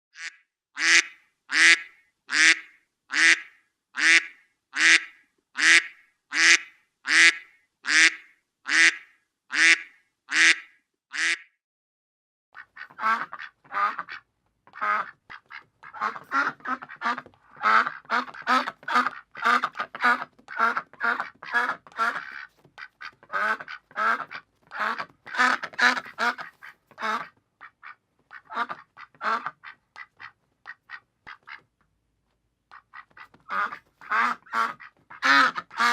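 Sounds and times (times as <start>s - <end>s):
ducks quacking: 12.6s - 31.7s, 32.7s - 35.9s.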